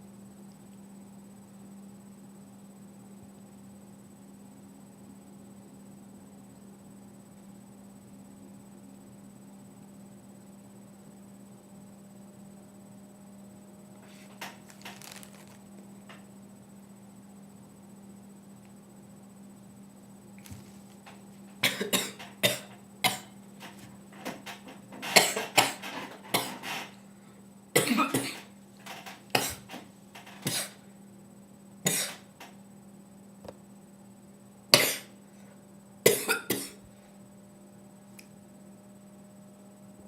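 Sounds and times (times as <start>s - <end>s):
person coughing: 21.6s - 23.4s, 25.1s - 26.7s, 27.8s - 28.5s, 29.4s - 29.7s, 30.4s - 30.8s, 31.9s - 32.2s, 34.8s - 35.2s, 36.1s - 36.8s.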